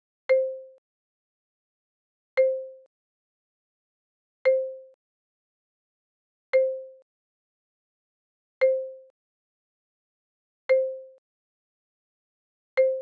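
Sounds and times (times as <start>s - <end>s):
click with low tone: 12.8s - 13.0s.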